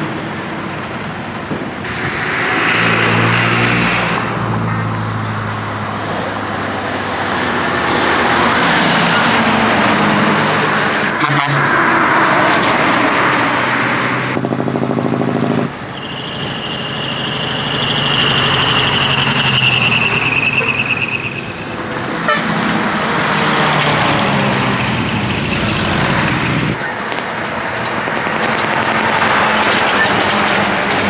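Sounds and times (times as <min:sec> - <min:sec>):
truck diesel engines revving: 0:00.0 - 0:26.8, 0:27.7 - 0:31.0
high thin steady tone: 0:15.8 - 0:22.0.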